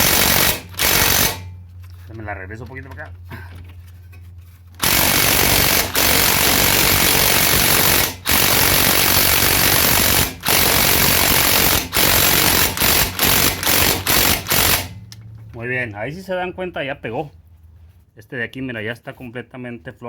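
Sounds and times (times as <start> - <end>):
impact wrench hammering: 0.0 - 1.6, 4.8 - 15.0.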